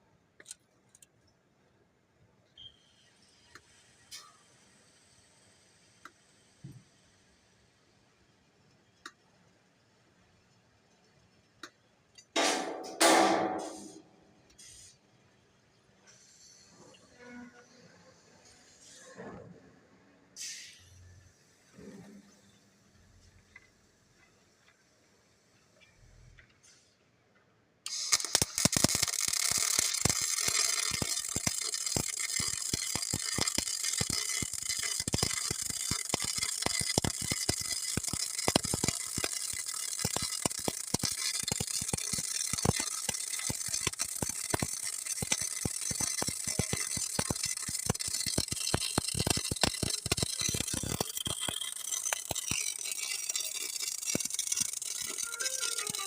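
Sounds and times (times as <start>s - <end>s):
welding arc crackling and popping: 12.4s - 14.0s, 27.9s - 56.0s.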